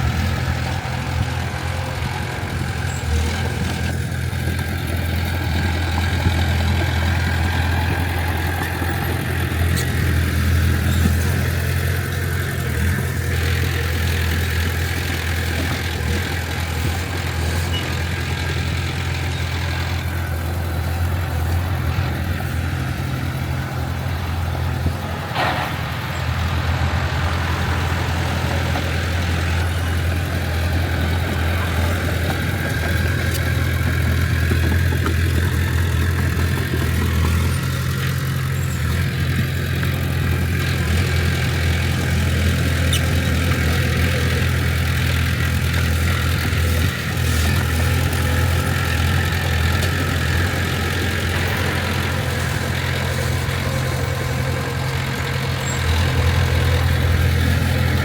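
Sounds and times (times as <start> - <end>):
heavy diesel engine running: 0.0 - 58.0.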